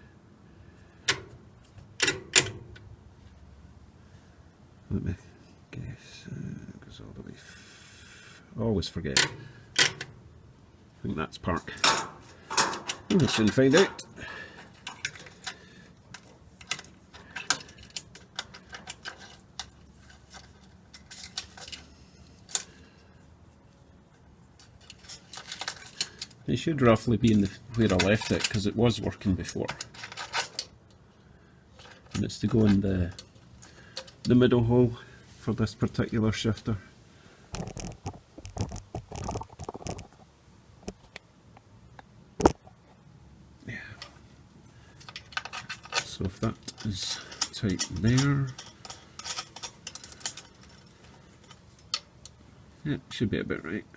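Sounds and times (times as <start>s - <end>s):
metal parts scraping and rattling: 11.4s - 36.7s, 37.6s - 40.2s, 44.0s - 52.6s
light metallic clicks and clinks: 11.6s - 22.9s, 24.6s - 31.1s, 31.7s - 34.4s, 44.9s - 52.4s.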